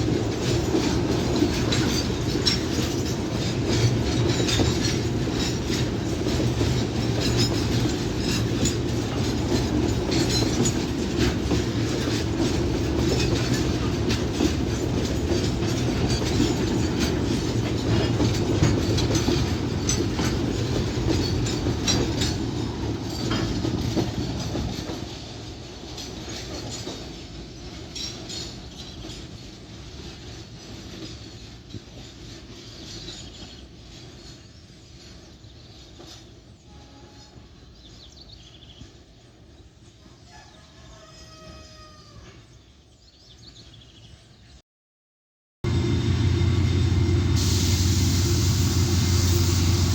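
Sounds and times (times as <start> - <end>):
freight train rumbling past: 0.0 - 32.5, 45.6 - 49.9
wheels clicking over rail joints: 0.0 - 36.5.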